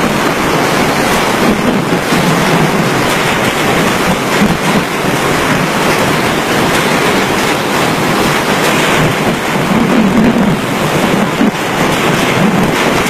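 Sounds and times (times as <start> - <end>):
driving rain: 0.0 - 13.0
strong wind: 0.0 - 13.0.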